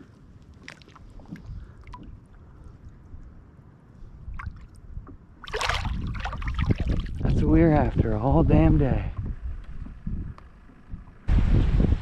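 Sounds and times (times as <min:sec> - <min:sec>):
light water sounds: 0:00.0 - 0:07.6
wind rumble on microphone: 0:00.0 - 0:12.0.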